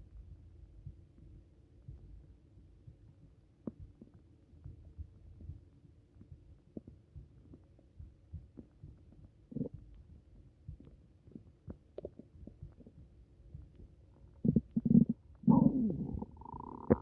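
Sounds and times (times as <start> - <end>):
stomach gurgling and pops: 2.8 - 17.0.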